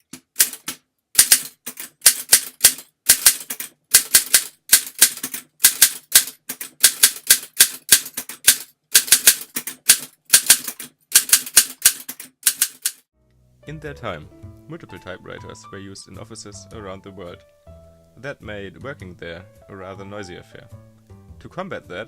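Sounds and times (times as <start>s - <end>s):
typewriter keys clacking: 0.0s - 13.0s.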